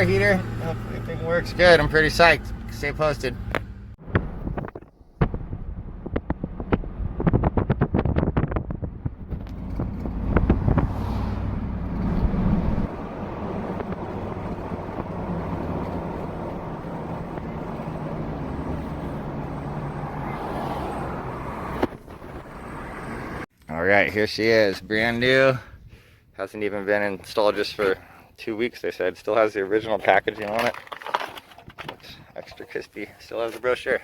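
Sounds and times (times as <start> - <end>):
road noise: 0.0 - 23.5
vehicle engine drone: 0.0 - 23.5.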